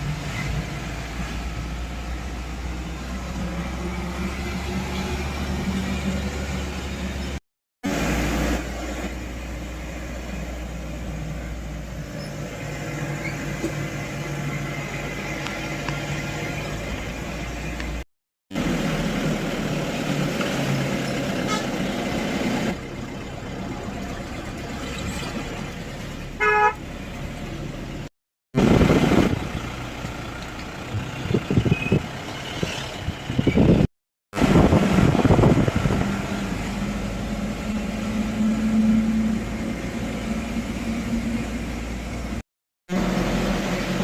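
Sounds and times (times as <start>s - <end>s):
passing vehicles: 0.0s - 44.0s
vehicle horn toot: 21.4s - 21.8s, 26.4s - 26.8s.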